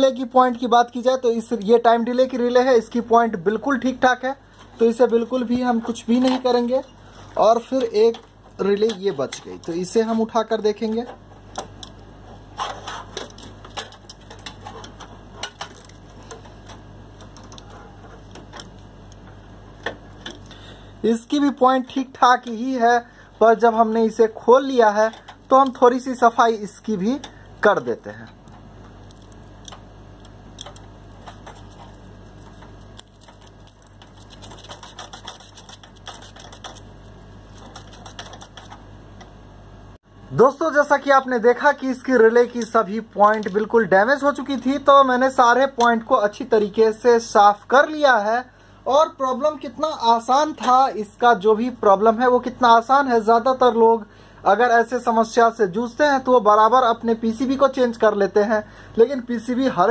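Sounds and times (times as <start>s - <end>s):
scratching relay contacts: 3.6s - 20.6s, 23.6s - 39.4s.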